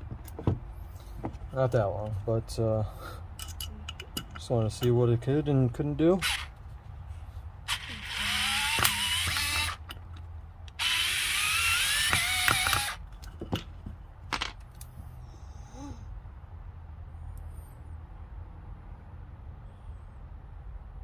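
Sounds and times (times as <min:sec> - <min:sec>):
electric screwdriver motor whine: 0:07.7 - 0:09.8, 0:10.8 - 0:13.0.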